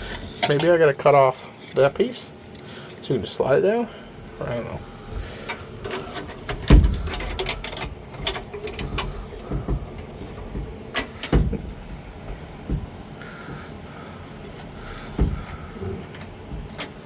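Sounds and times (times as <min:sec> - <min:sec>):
heavy thumps: 0:05.0 - 0:17.0
car interior panel knocks and clicks: 0:06.2 - 0:13.6, 0:14.5 - 0:17.0.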